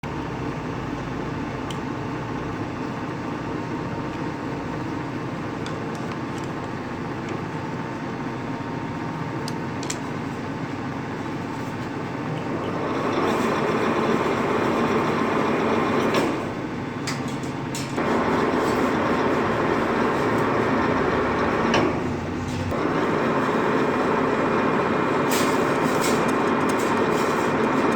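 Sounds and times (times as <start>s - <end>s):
lathe running: 10.7s - 27.9s.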